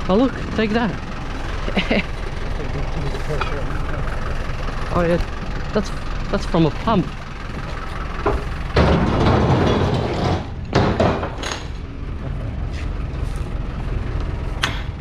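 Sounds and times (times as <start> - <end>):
truck engine idling: 0.0 - 15.0
metal clanks: 3.1 - 3.8, 7.6 - 11.8.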